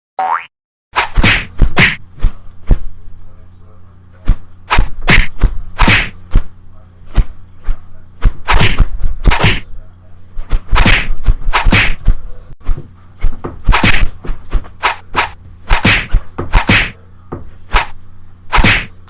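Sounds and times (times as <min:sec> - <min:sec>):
sharp whacks and knocks: 0:01.0 - 0:02.8, 0:04.2 - 0:06.5, 0:07.1 - 0:07.4, 0:08.2 - 0:09.7, 0:10.5 - 0:17.0, 0:17.7 - 0:19.0
short swishing bursts: 0:01.0 - 0:02.8, 0:04.2 - 0:06.5, 0:07.1 - 0:09.6, 0:10.4 - 0:17.0, 0:17.7 - 0:19.0
steady low hum: 0:01.0 - 0:19.0.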